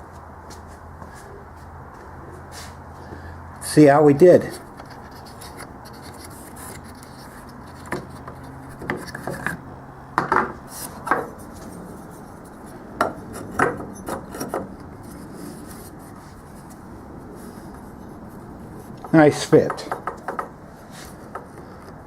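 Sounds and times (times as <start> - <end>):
metal scraping against wood: 4.4 - 16.8
light knocks of metal on wood: 19.0 - 20.6.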